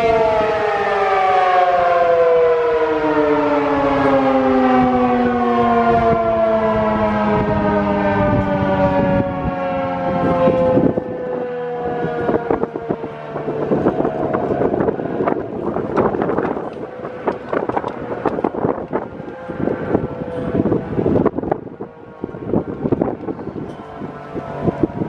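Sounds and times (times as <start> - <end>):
warning siren winding down: 0.0 - 25.0
wind gusts on microphone: 0.0 - 25.0.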